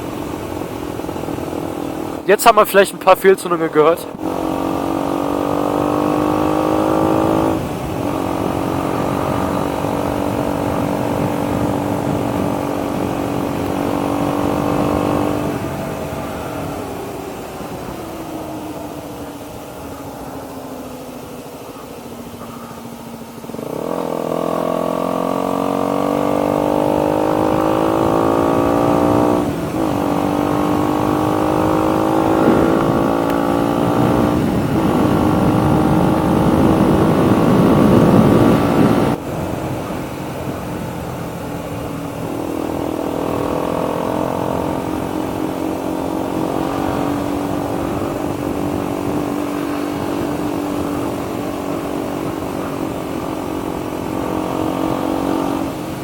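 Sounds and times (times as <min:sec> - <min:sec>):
motorcycle engine accelerating: 0:00.0 - 0:56.0.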